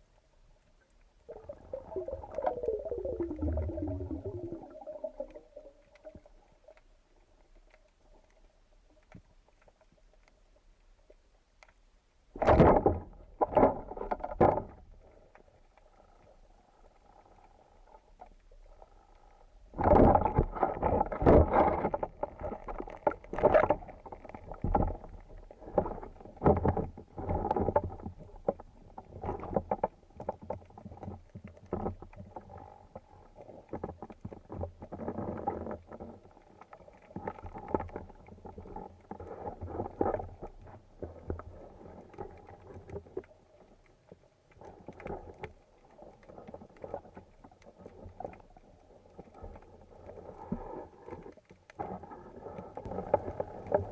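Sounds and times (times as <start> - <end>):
water sloshing and splashing: 1.0 - 8.2, 19.7 - 53.9.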